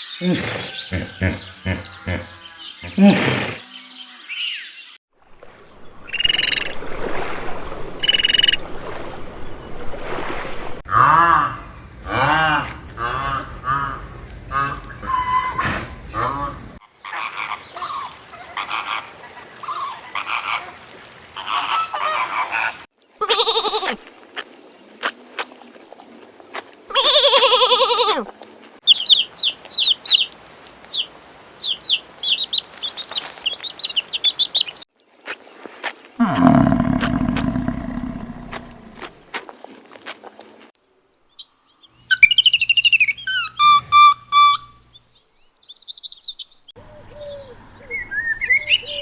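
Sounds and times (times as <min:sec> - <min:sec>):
honking or bleating animal calls: 0:23.2 - 0:24.0, 0:36.2 - 0:39.0
rapid high bird chirps: 0:42.1 - 0:44.8.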